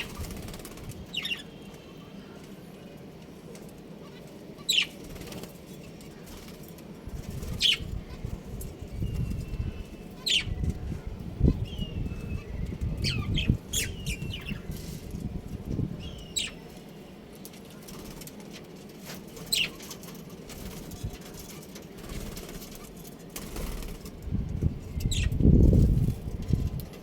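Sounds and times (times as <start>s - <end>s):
budgerigars chirping: 1.1s - 1.6s, 4.0s - 5.0s, 11.5s - 14.7s, 16.0s - 16.6s.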